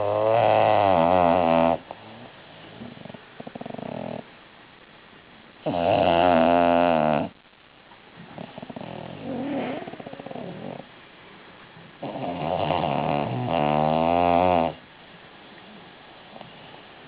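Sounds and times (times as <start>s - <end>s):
dog snoring: 0.0s - 4.3s, 5.6s - 7.4s, 8.2s - 10.9s, 12.0s - 14.8s, 15.7s - 16.9s.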